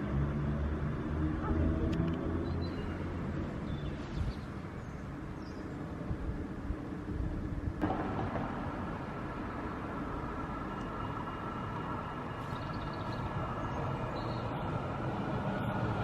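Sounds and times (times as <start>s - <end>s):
tram rumbling on rails: 6.7s - 16.0s.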